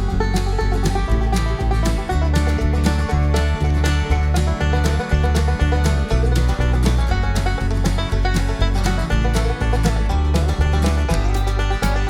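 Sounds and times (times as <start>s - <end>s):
music with bass beat: 0.0s - 12.0s.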